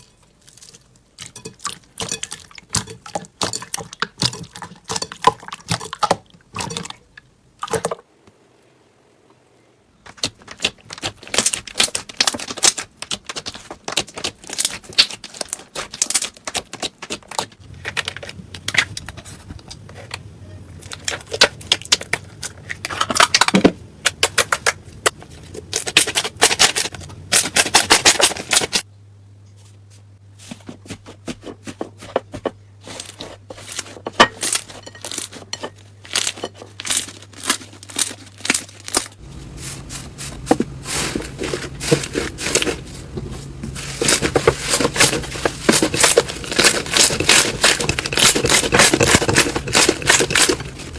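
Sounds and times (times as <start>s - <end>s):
slime squishing and crackling: 10.0s - 20.2s, 32.9s - 50.9s.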